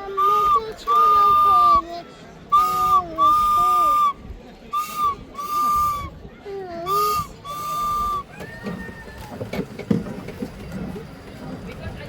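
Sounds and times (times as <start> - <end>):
whistle blasts: 0.0 - 1.8, 2.5 - 6.2, 6.9 - 8.4.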